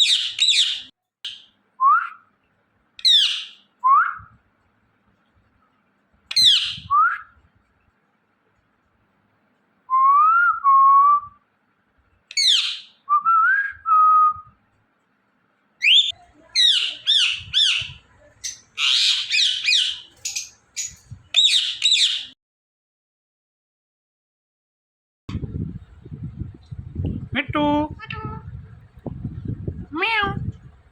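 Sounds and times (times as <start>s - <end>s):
parrot chirps and squawks: 0.0s - 1.5s, 3.0s - 3.6s, 6.3s - 6.8s, 12.3s - 13.0s, 15.8s - 22.3s.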